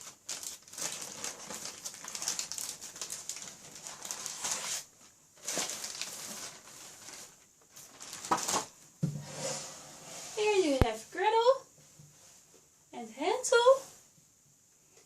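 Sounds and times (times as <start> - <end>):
packaging rustling and crinkling: 0.0 - 8.8.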